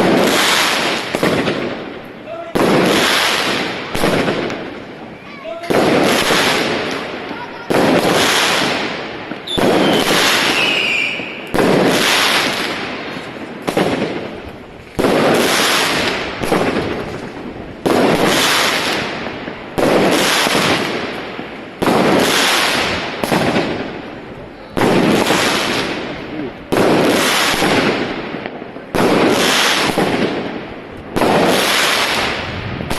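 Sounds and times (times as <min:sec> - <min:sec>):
firework bangs: 0:00.0 - 0:32.9
falling firework whistle: 0:09.4 - 0:12.3.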